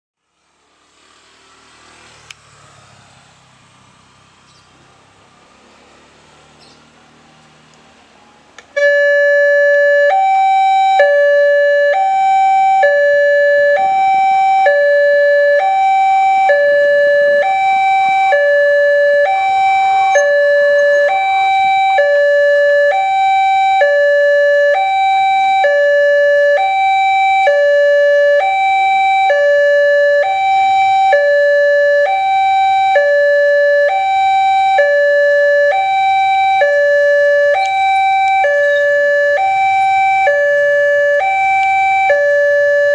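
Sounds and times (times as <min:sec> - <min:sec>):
level-crossing two-tone warning siren: 0:08.7 - 0:42.9.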